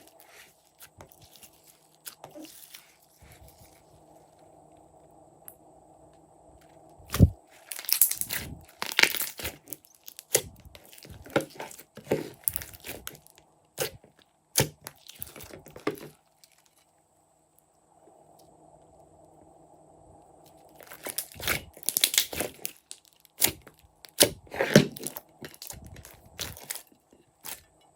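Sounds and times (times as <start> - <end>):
slime squished by hand: 7.1 - 14.0, 20.8 - 26.8.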